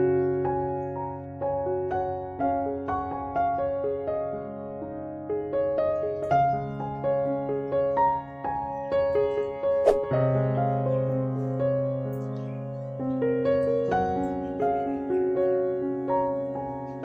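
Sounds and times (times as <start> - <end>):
slow piano music: 0.0 - 17.0
sharp click: 9.9 - 10.1.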